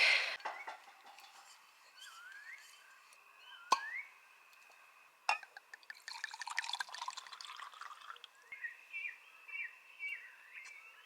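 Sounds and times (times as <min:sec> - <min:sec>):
glass clinking: 0:05.3 - 0:08.2
wine pouring into a glass: 0:05.8 - 0:08.3.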